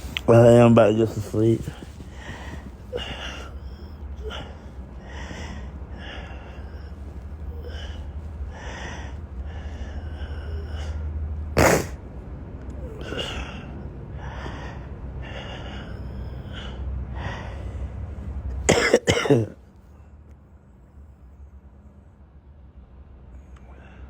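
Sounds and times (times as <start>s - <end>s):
low steady hum: 0.0s - 24.0s
breathing: 1.6s - 11.1s, 12.9s - 18.4s, 23.3s - 24.0s
man coughing: 11.6s - 12.0s, 18.7s - 19.6s.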